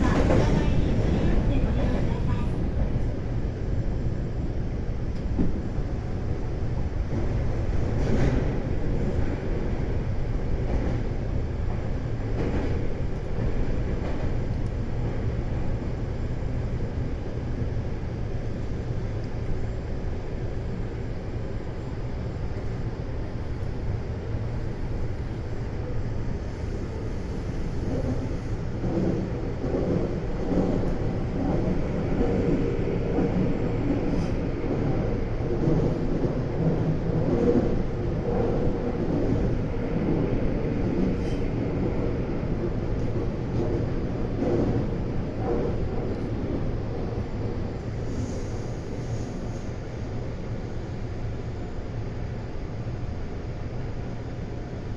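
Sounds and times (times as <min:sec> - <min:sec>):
train wheels rumbling on rail: 0:00.0 - 0:54.9.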